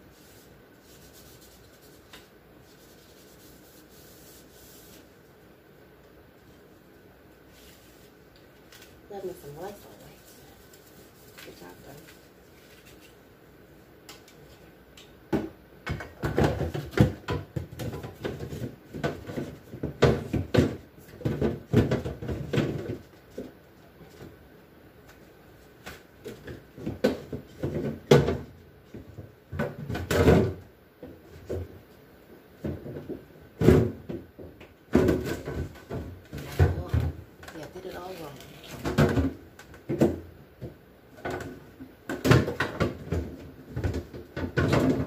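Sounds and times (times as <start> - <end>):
refrigerator shelves clattering: 41.2 - 45.0.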